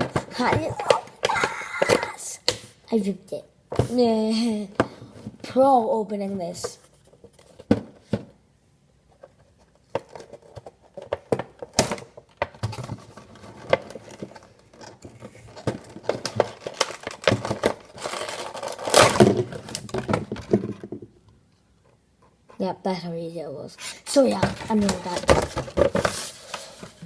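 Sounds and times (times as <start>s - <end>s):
rustling and tearing: 16.2s - 19.8s.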